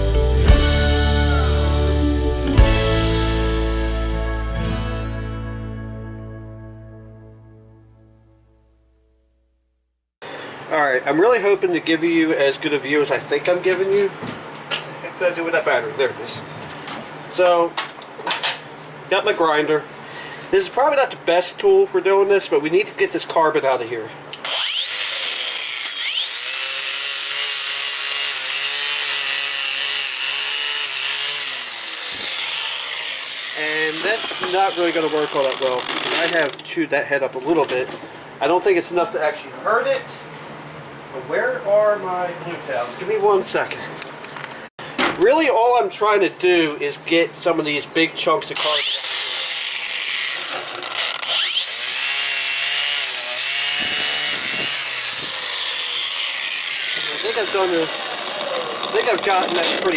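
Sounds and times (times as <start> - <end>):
grinder motor whine: 24.3 - 36.7, 48.6 - 59.9
grinding scraping hiss: 24.7 - 36.8, 48.5 - 59.9.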